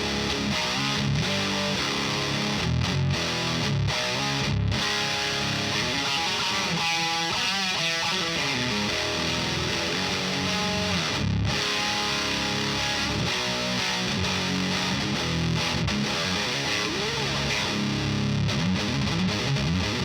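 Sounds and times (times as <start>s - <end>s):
distorted electric guitar riffs: 0.0s - 20.0s.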